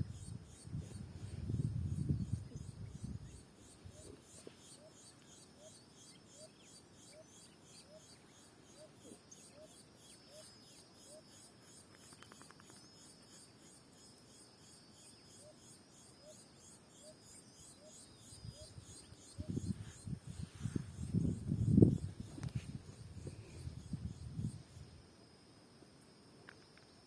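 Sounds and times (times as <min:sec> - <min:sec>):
insects chirring: 0:00.0 - 0:27.0.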